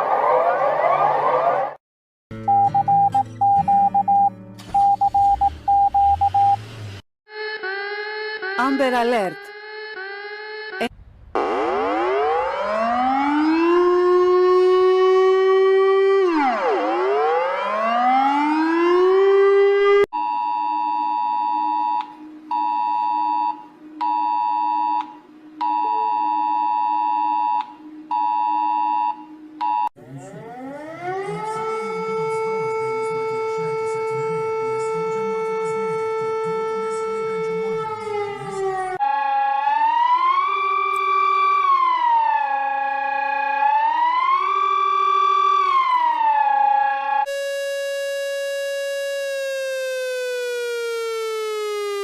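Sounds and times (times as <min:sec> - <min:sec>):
emergency alert siren glides: 0:00.0 - 0:01.8, 0:07.3 - 0:52.0
rising alert tone: 0:07.4 - 0:14.6.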